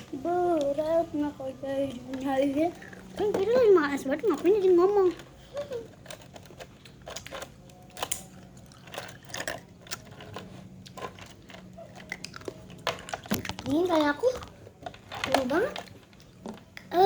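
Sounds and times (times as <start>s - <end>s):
ice cubes crunched between teeth: 11.0s - 14.6s.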